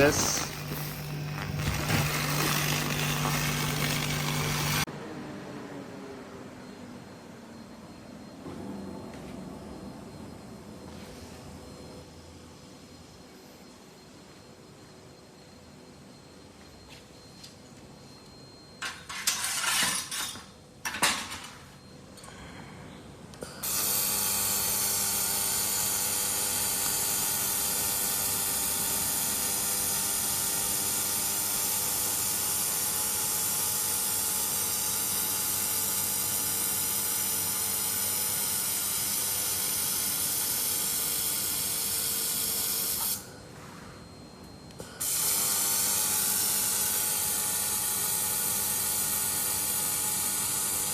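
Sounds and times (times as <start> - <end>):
laser cleaning hiss: 0.0 - 4.9.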